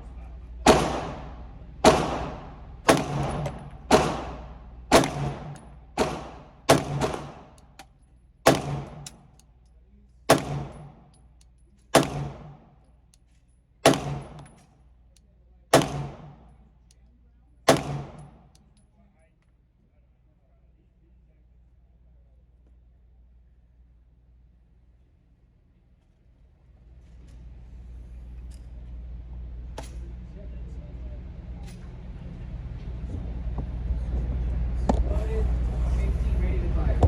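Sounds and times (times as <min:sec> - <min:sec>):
pistol shots: 0:00.6 - 0:09.4, 0:10.3 - 0:11.1, 0:11.9 - 0:12.7, 0:13.8 - 0:14.6, 0:15.7 - 0:16.5, 0:17.7 - 0:18.5.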